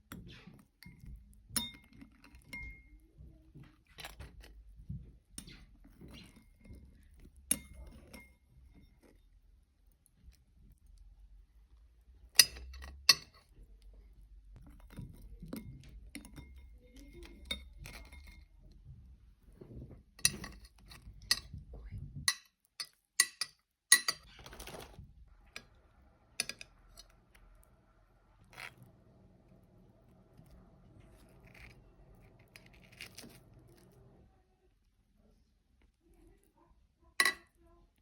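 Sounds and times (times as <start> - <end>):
glass dishes clinking: 0.8 - 3.0, 22.3 - 24.3
soft handling noise: 24.2 - 25.8.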